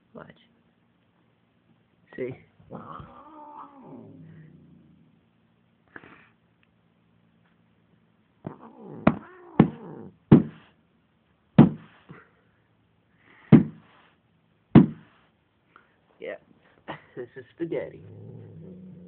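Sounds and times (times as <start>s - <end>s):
cat growling and yowling: 2.7s - 5.2s, 8.4s - 10.2s, 18.0s - 19.0s
sharp thumps: 8.5s - 10.6s, 14.8s - 15.1s.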